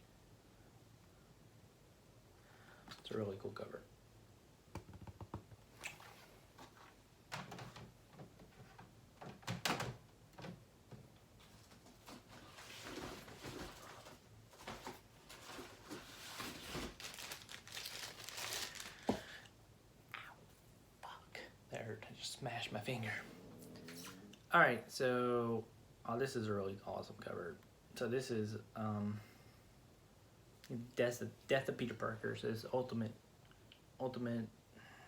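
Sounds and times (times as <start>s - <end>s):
packaging rustling and crinkling: 11.4s - 19.4s.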